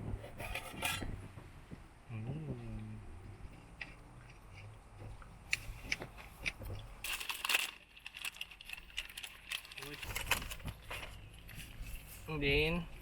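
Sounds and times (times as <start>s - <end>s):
packaging crinkling: 7.0s - 11.0s.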